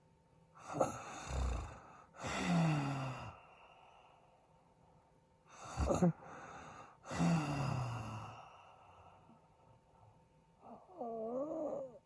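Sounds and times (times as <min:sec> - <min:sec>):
man snoring: 0:00.6 - 0:03.4, 0:05.6 - 0:08.5.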